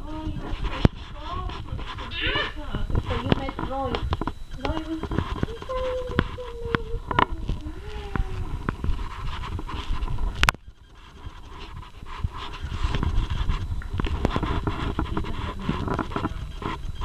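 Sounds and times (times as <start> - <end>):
puppy panting: 0.0 - 10.2
handling rustle: 0.0 - 17.0.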